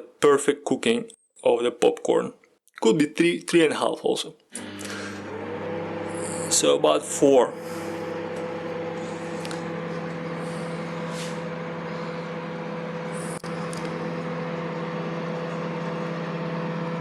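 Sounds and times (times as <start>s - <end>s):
microwave oven humming: 4.6s - 17.0s.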